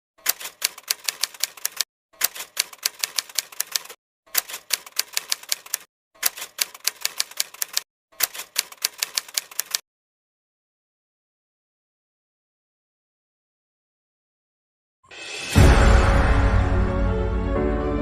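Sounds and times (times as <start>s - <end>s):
rapid typing clicks: 0.2s - 9.8s.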